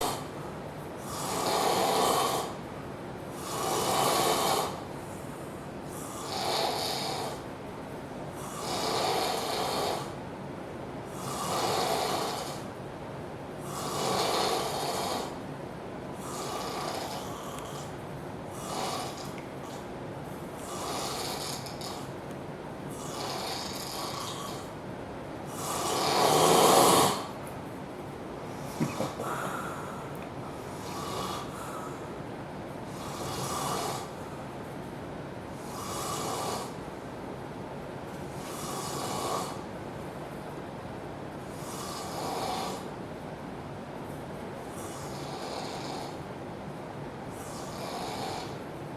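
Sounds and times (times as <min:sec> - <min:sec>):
man snoring loudly: 0:01.1 - 0:02.5, 0:06.2 - 0:07.4, 0:13.8 - 0:15.3, 0:28.7 - 0:29.9, 0:30.8 - 0:31.6, 0:47.5 - 0:48.6.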